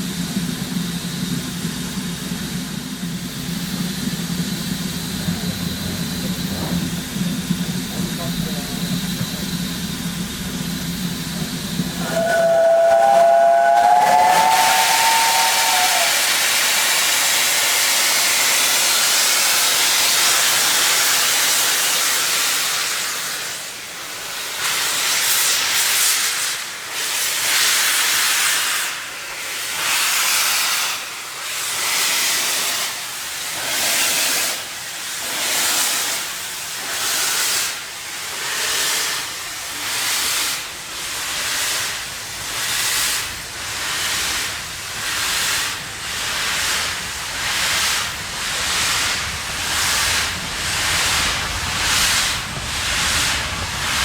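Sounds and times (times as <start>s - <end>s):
locomotive exhaust beats: 0.0s - 16.4s
steam hissing: 0.0s - 54.0s
steam locomotive whistle: 12.0s - 17.2s.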